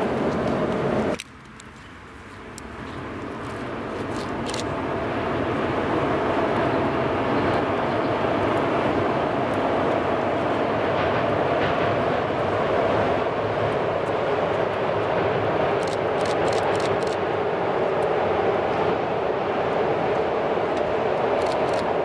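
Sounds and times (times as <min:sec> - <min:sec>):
electric train passing: 0:00.0 - 0:22.0
sharp clicks: 0:15.8 - 0:17.2.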